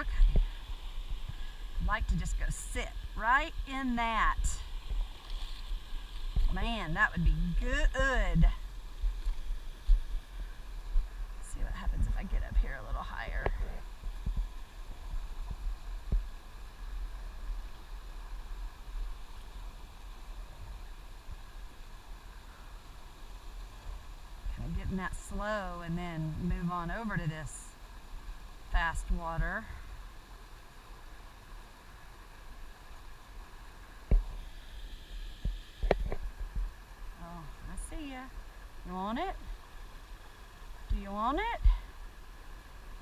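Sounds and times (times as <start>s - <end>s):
wind rumble on microphone: 0.0s - 21.6s, 23.9s - 27.7s, 35.4s - 38.2s
river water hissing: 0.0s - 43.0s.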